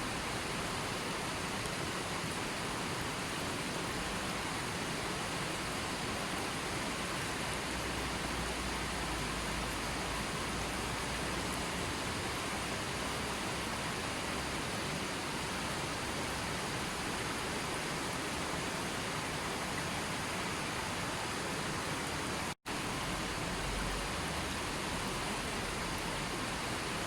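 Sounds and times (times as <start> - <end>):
water rushing: 0.0 - 27.0.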